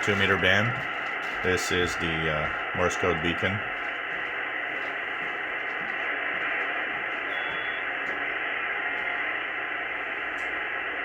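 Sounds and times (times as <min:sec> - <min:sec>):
radio receiver hiss: 0:00.0 - 0:11.0
weak morse code beacon: 0:07.2 - 0:08.1.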